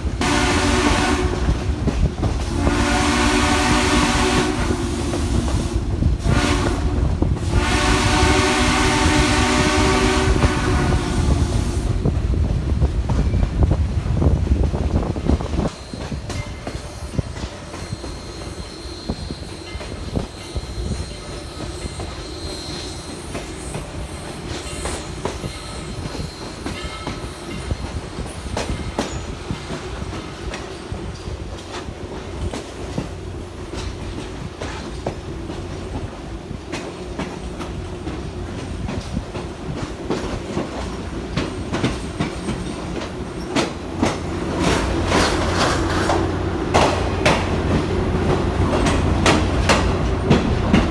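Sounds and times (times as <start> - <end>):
train wheels clicking over rail joints: 0.0 - 11.0, 11.8 - 50.9
train low rumble: 0.0 - 50.9
faint high wheel squeal: 15.6 - 29.6.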